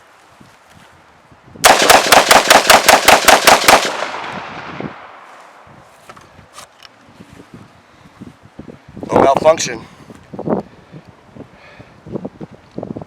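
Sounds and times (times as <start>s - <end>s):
gunshot echo: 1.6s - 5.3s
rifle shots: 1.6s - 5.3s.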